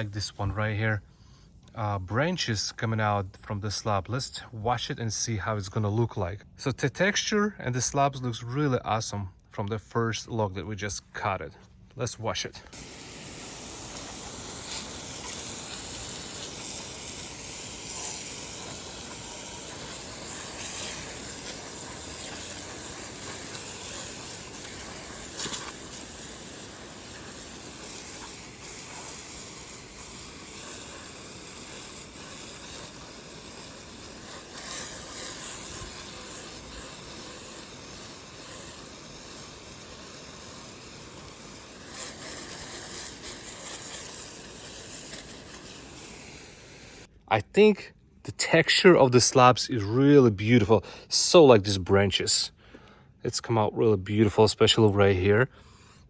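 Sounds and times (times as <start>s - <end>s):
water spray hissing: 12.7s - 47.1s.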